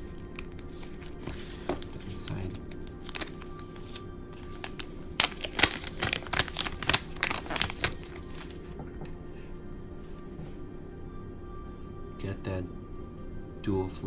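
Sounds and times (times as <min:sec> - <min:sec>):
plastic packaging crinkling and clicking: 0:00.0 - 0:08.8
soft background music: 0:00.0 - 0:14.0.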